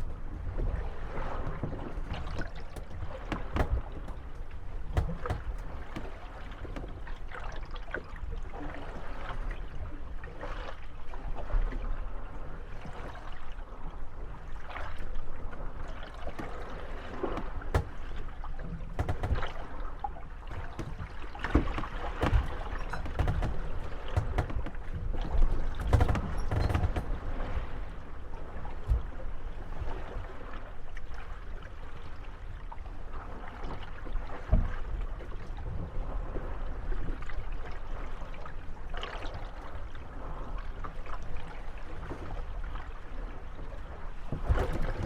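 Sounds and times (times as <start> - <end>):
boats creaking: 0.5 - 8.0, 16.1 - 29.2, 44.2 - 45.0
wooden boats knocking together: 1.7 - 7.1, 16.3 - 27.6, 44.3 - 45.0.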